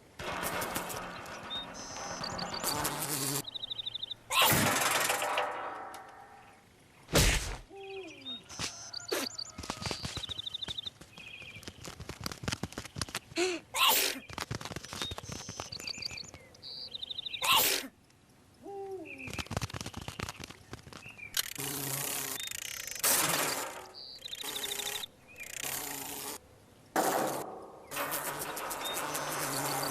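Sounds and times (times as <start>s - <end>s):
loud sudden thumps: 0.0s - 7.7s
high chirping trills: 1.2s - 4.4s
quick clicking: 19.2s - 21.8s.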